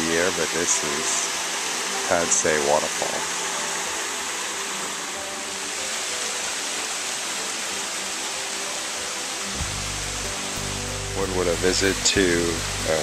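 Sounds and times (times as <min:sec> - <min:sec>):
waterfall rushing: 0:00.0 - 0:13.0.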